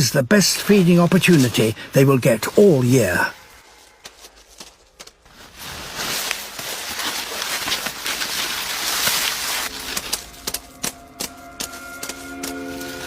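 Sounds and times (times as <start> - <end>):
animals scrambling over stones: 3.5 - 13.0.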